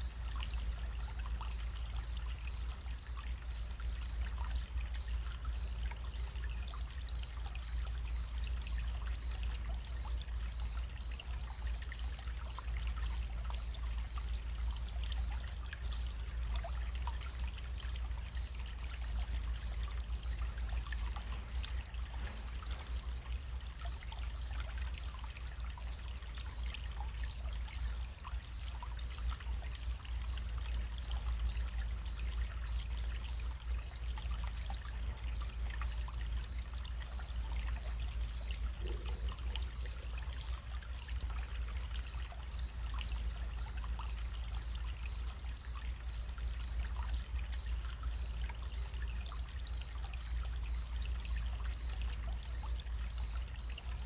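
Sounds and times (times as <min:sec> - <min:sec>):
constant low rumble: 0:00.0 - 0:54.0
stream trickling water: 0:00.0 - 0:54.0.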